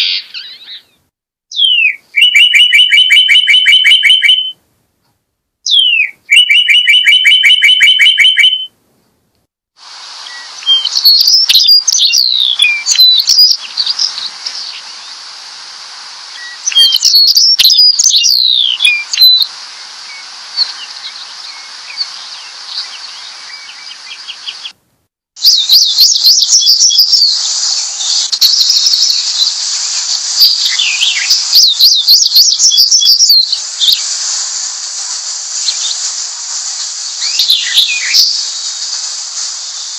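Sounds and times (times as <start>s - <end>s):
birds chirping and warbling: 0.0s - 4.5s, 10.3s - 15.4s, 16.2s - 24.8s, 25.4s - 34.0s, 36.8s - 38.6s
bird trill: 0.0s - 4.6s, 5.6s - 8.7s, 10.3s - 15.1s, 16.4s - 24.8s, 25.4s - 29.6s, 30.4s - 33.6s
steady hiss: 9.8s - 24.8s, 25.4s - 39.9s.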